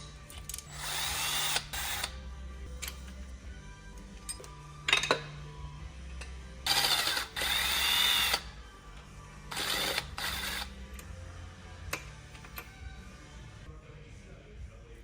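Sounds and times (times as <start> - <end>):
handheld power tool bursts: 0.7 - 2.1.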